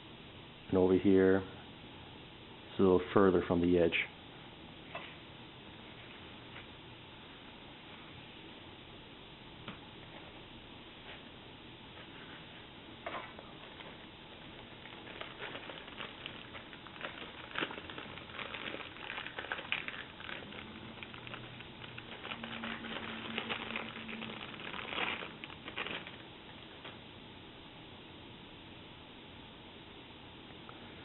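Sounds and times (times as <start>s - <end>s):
packaging crinkling: 13.5s - 26.7s.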